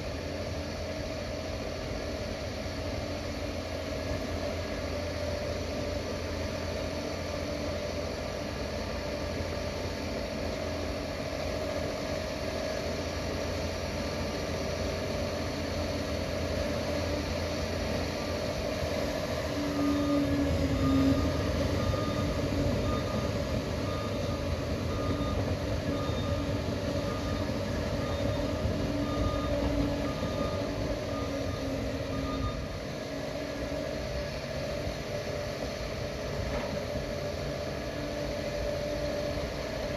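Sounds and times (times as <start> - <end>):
high beep: 19.9 - 32.8.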